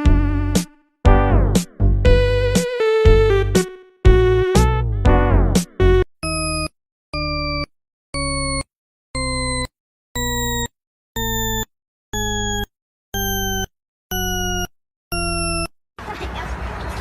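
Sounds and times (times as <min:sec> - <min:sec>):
electronic beeps: 0:06.2 - 0:15.7.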